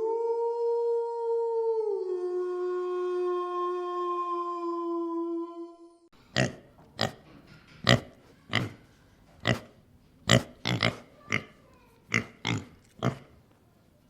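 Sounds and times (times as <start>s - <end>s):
animal grunting: 7.8s - 13.4s.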